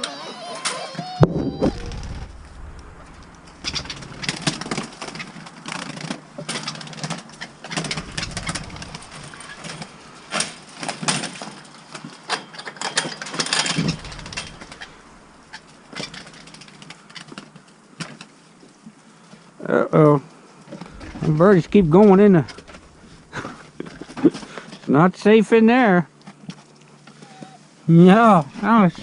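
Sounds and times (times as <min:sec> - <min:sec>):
puppies scuffling: 0:01.0 - 0:17.4
pigeon wings flapping: 0:01.4 - 0:11.3, 0:13.6 - 0:17.4.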